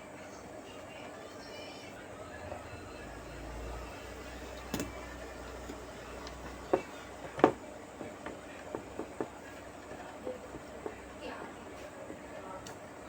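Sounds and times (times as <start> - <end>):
tools clicking and tapping on workbench: 4.6 - 5.0, 5.6 - 11.0.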